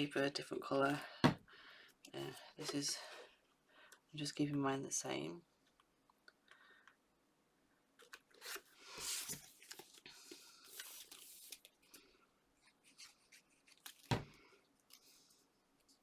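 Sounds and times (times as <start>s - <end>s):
paper rustling: 8.4s - 12.0s.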